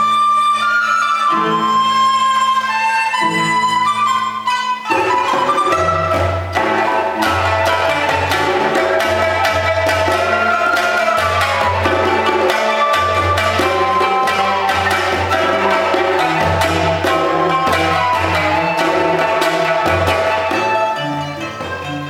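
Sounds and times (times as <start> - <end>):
bamboo flute: 0.0 - 22.0
pipa: 0.0 - 22.0
hand drum rhythm: 4.9 - 22.0.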